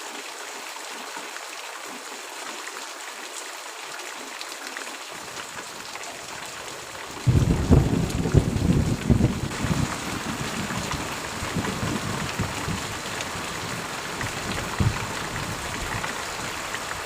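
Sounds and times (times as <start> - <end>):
gentle rain hiss: 0.0 - 17.0
rain drips: 0.0 - 17.0
deep thunder rumble: 7.2 - 16.0.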